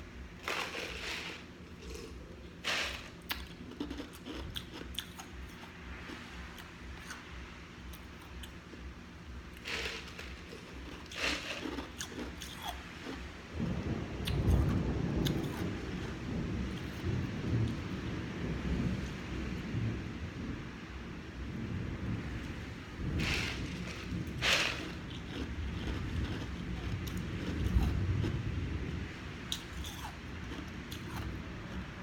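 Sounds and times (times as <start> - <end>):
chewing and crunching food: 0.2 - 17.1, 23.0 - 32.0
thunder rumbling: 13.5 - 32.0.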